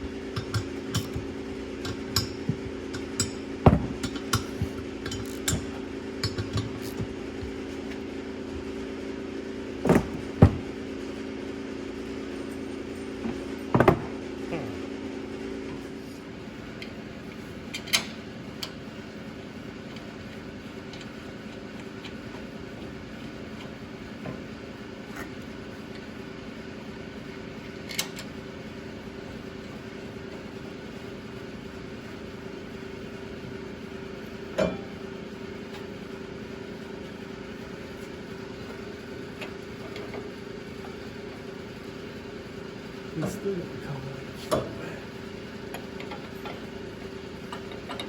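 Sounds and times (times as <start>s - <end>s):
low mechanical hum: 0.0s - 48.0s
sharp clicks and knocks: 0.4s - 7.5s.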